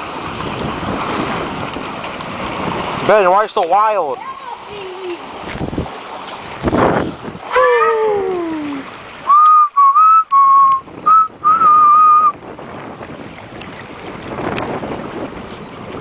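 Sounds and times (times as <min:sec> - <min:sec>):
person whistling: 0:09.3 - 0:12.4.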